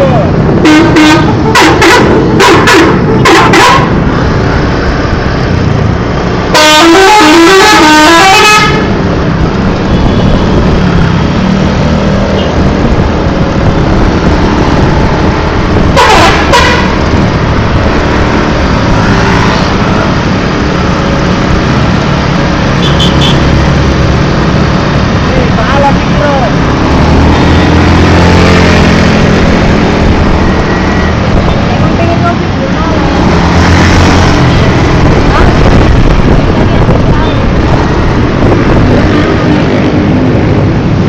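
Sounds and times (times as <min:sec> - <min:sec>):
road traffic noise: 0:00.0 - 0:41.0
bus musical horn melody: 0:00.5 - 0:04.1, 0:06.5 - 0:09.0, 0:15.9 - 0:17.0.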